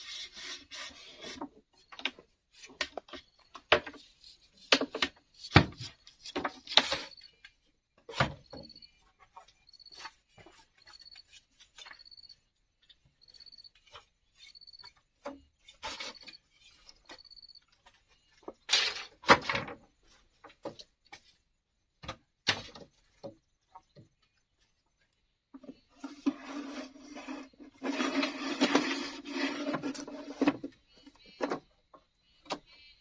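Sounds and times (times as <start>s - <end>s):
bamboo taps and knocks: 1.9s - 7.1s, 22.0s - 24.2s.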